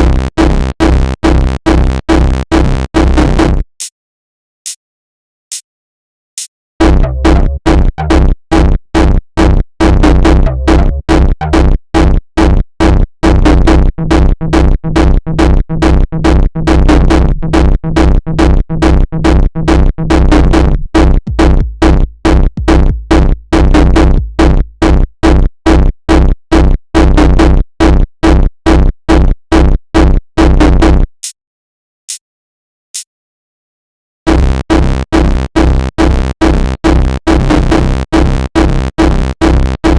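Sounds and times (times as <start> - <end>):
heavy drum machine kick: 21.0 - 25.0
electronic dance beat: 21.3 - 24.6.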